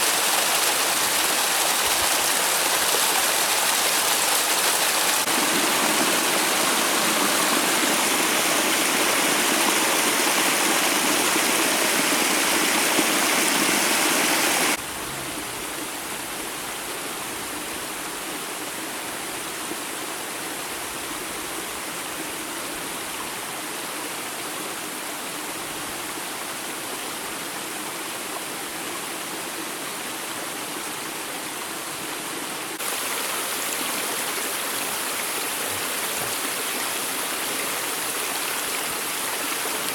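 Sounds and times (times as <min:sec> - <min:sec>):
waterfall rushing: 0:00.0 - 0:16.4, 0:32.7 - 0:39.9.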